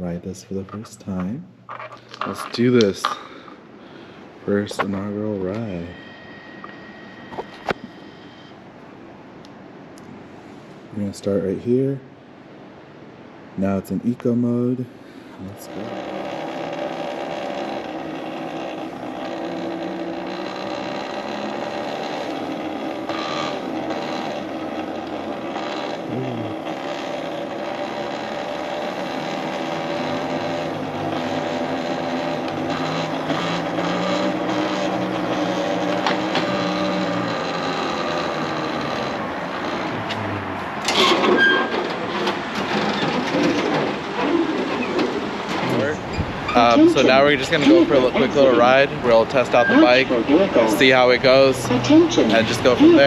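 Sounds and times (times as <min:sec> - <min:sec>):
electric motorbike motor whining: 0:15.5 - 0:53.0.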